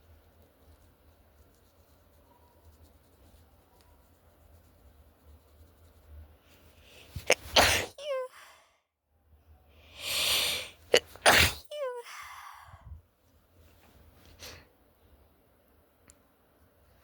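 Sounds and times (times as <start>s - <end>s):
woman sneezing: 7.1s - 8.5s, 10.0s - 12.3s
in-breath: 8.3s - 8.8s, 9.7s - 10.8s, 12.0s - 13.0s, 14.4s - 14.7s.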